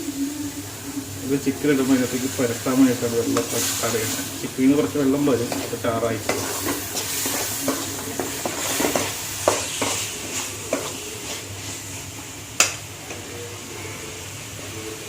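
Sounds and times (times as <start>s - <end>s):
sauce sizzling in a pan: 0.0s - 15.0s
spoon scraping against pan: 4.8s - 12.0s.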